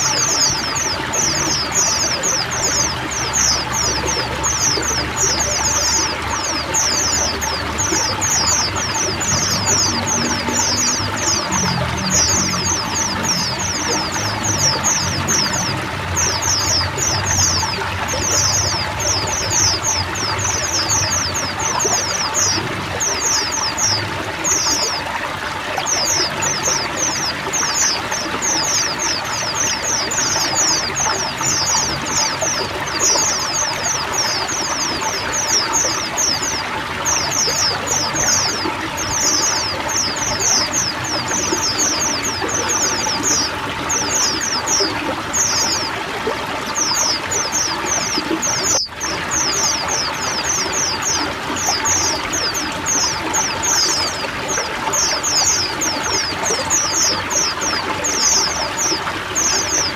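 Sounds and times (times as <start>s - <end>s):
running water: 0.0s - 59.9s
small birds chirping: 0.0s - 59.9s.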